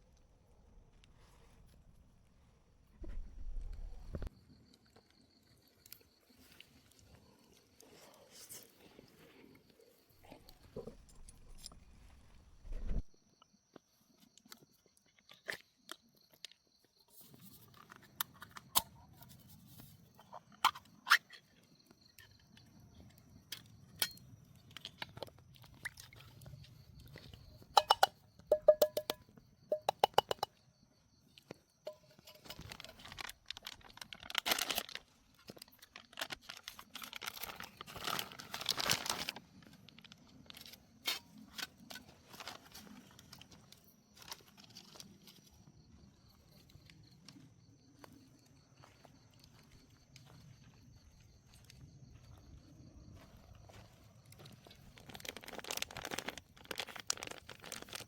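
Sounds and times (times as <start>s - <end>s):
cookware clicks and taps: 27.8s - 30.5s
packaging rustling and tearing: 32.5s - 39.4s, 55.0s - 58.0s.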